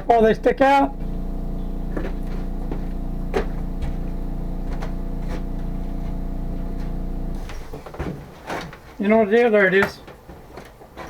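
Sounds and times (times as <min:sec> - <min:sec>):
electric motor hum: 0:00.0 - 0:08.0.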